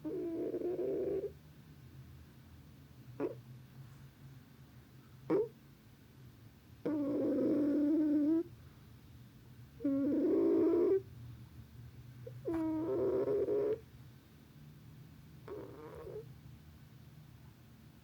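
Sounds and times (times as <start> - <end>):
cat snoring: 0.0 - 1.4, 6.8 - 8.5, 9.8 - 11.0, 12.3 - 13.8, 15.4 - 16.3.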